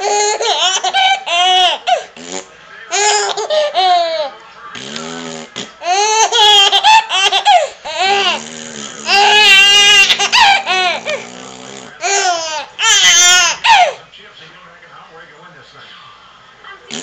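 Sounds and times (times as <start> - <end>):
baby laughing: 0.0 - 2.1, 2.9 - 4.3, 5.8 - 8.4, 9.0 - 11.2, 12.0 - 14.0
fart noises: 2.2 - 2.5, 4.7 - 5.9, 8.1 - 12.2.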